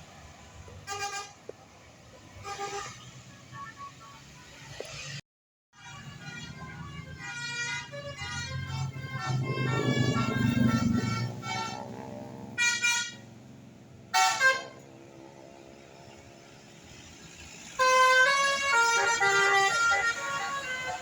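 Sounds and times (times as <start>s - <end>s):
bus multi-tone air horn melody: 0.8s - 1.4s, 2.3s - 3.2s, 5.8s - 13.4s, 14.1s - 14.9s, 17.6s - 21.0s.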